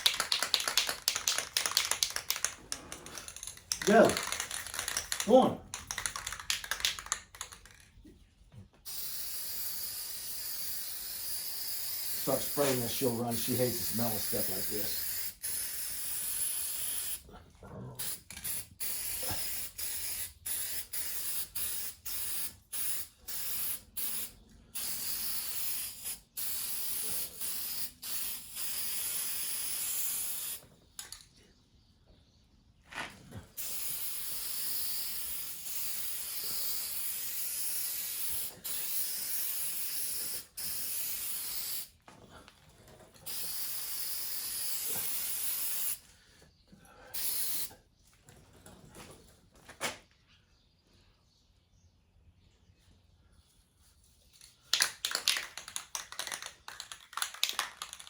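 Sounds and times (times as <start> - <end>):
aerosol spray can hissing: 8.9 - 17.2, 18.0 - 30.6, 33.5 - 41.9, 43.3 - 46.0, 47.2 - 47.7.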